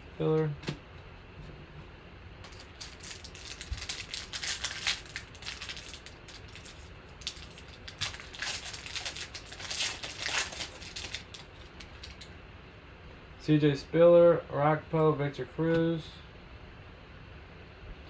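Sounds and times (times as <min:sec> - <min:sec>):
wrappers and cards crinkling: 0:02.4 - 0:12.3.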